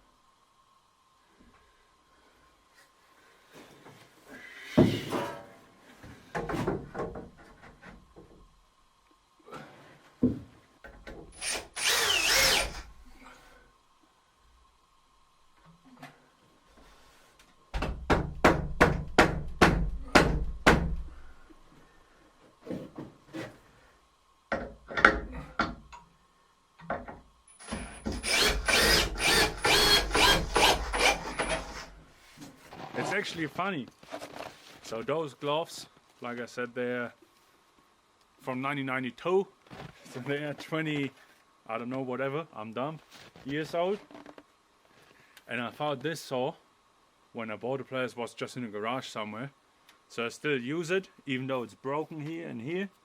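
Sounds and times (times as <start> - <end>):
power drill driving screws into wood: 11.3 - 12.9, 27.5 - 31.9.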